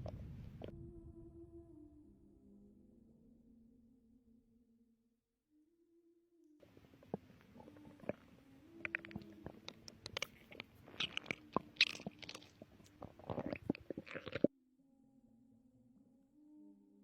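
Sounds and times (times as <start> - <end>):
stomach gurgling: 0.0 - 0.7, 6.6 - 14.5.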